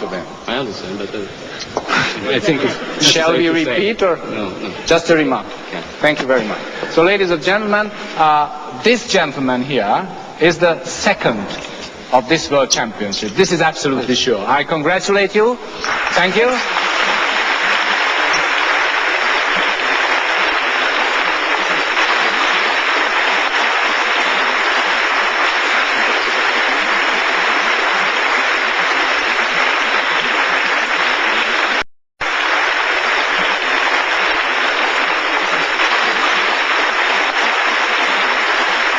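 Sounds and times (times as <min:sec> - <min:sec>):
audience applauding: 0:01.7 - 0:08.3, 0:15.1 - 0:38.9.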